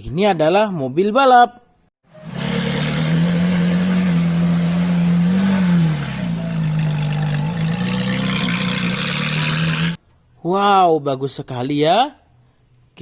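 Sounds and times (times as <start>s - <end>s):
racing car engine drone: 2.1s - 10.0s.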